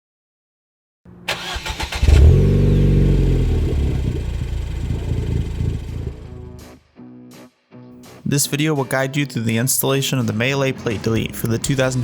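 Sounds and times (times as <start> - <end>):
car engine revving and idling: 1.3 - 6.7.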